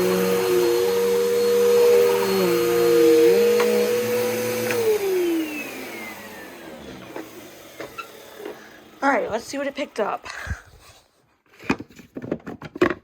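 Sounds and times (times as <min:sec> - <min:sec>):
upright vacuum motor whine: 0:00.0 - 0:10.3.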